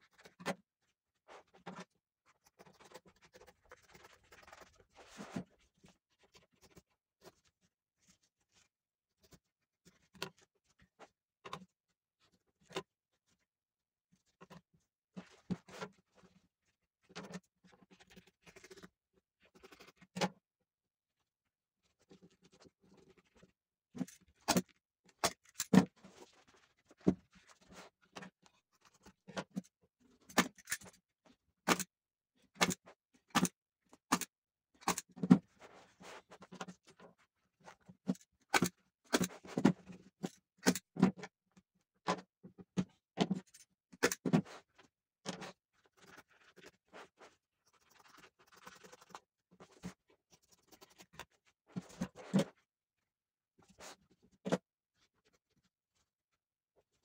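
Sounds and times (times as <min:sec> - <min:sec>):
sharp taps and clicks of tools: 0:31.7 - 0:31.9, 0:32.6 - 0:32.8, 0:38.5 - 0:39.3.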